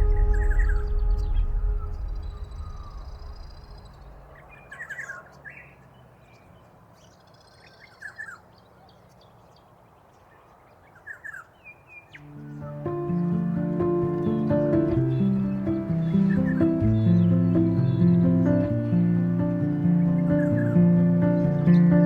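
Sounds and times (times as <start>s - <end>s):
background music: 0.0s - 3.5s, 12.3s - 22.0s
birds chirping: 0.0s - 22.0s
faint outdoor hiss: 12.1s - 22.0s.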